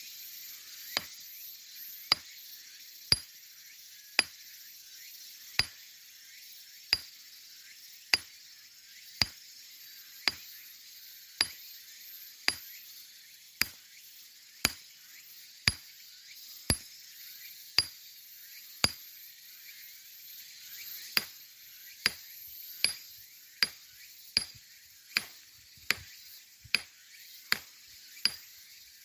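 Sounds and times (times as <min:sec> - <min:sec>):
rock hammer striking stone: 0:01.0 - 0:01.2, 0:02.1 - 0:02.3, 0:06.9 - 0:07.1, 0:08.1 - 0:08.4, 0:10.3 - 0:10.5, 0:11.4 - 0:11.6, 0:12.5 - 0:12.8, 0:13.6 - 0:13.8, 0:15.7 - 0:15.9, 0:18.8 - 0:19.0, 0:21.2 - 0:21.4, 0:22.0 - 0:22.2, 0:22.8 - 0:23.8, 0:24.4 - 0:24.6, 0:25.2 - 0:28.5.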